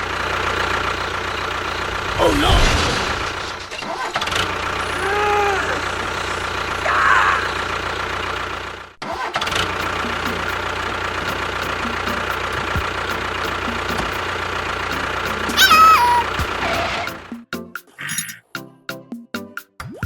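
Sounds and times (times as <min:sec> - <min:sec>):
vehicle engine running: 0:00.0 - 0:17.4.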